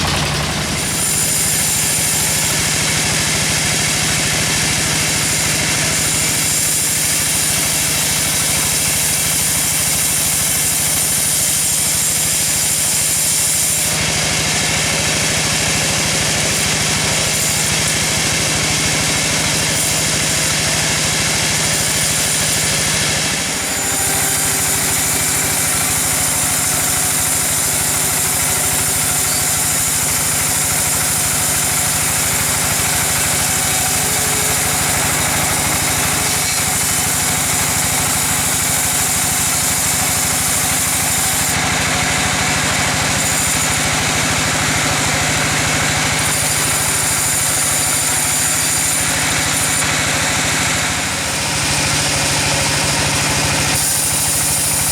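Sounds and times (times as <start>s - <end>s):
engine humming: 0.0s - 2.1s, 21.2s - 40.7s
loud high hiss: 21.8s - 41.4s.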